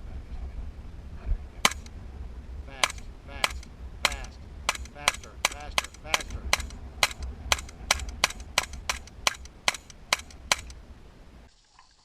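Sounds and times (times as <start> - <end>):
gunshots: 1.6 - 1.9, 2.8 - 10.7.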